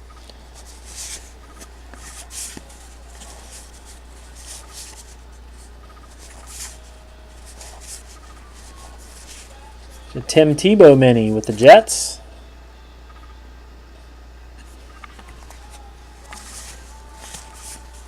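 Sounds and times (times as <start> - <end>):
steady low hum: 0.0 - 18.0
trading cards sliding: 0.3 - 10.1, 14.6 - 18.0.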